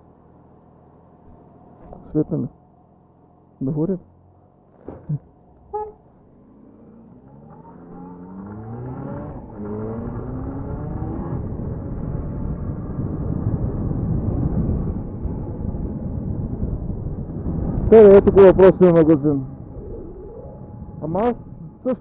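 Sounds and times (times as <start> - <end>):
wind and road noise: 0.0 - 22.0
motorcycle engine accelerating: 4.7 - 22.0.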